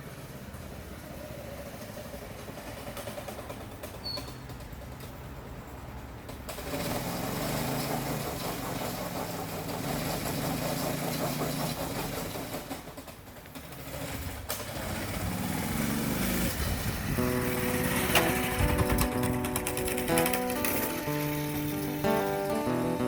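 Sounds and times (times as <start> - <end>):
small engine running: 6.5 - 23.0.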